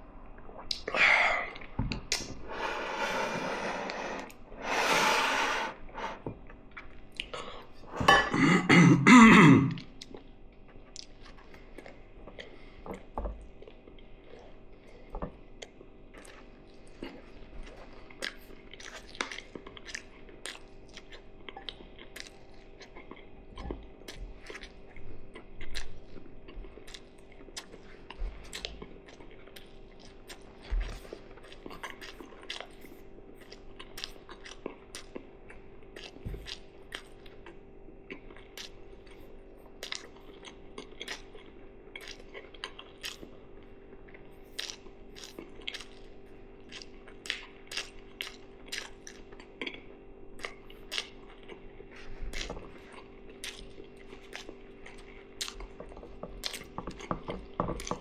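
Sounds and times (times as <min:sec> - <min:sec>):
steady low hum: 0:00.0 - 0:58.0
wet chewing with mouth clicks: 0:00.4 - 0:05.4, 0:06.0 - 0:07.7, 0:09.8 - 0:58.0.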